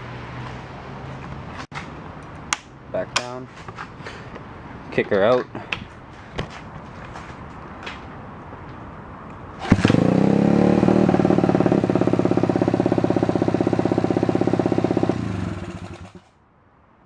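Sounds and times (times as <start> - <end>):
motorbike engine kick-started and idling: 9.6 - 16.3.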